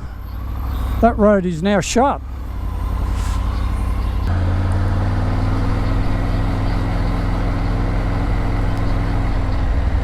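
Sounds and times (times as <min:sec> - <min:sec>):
motorcycle engine running: 0:00.2 - 0:10.0.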